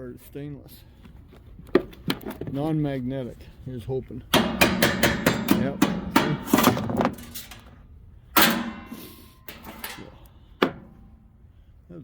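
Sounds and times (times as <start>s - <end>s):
metal parts knocking and clanking: 4.3s - 11.2s.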